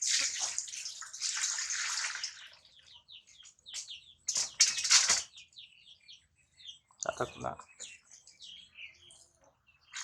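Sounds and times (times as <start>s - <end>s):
water pouring and splashing: 0.0s - 2.8s, 4.3s - 5.3s.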